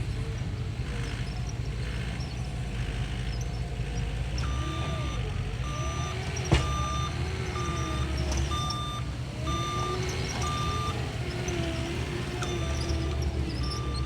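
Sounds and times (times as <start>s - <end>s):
engine running: 0.0s - 14.0s
reversing alarm beeping: 4.4s - 14.0s.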